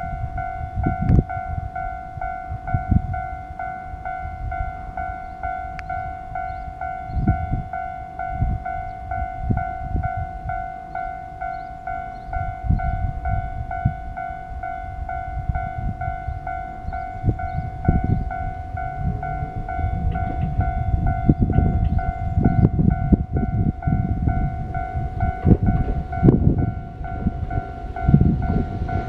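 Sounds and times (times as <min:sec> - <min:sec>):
level crossing bell ringing: 0:00.0 - 0:29.0
irregular low rumble: 0:17.3 - 0:29.0.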